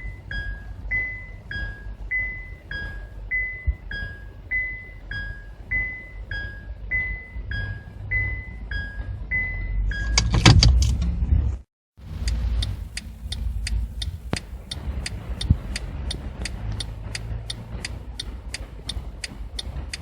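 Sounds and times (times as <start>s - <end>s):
two-tone warning chime: 0.0s - 10.3s.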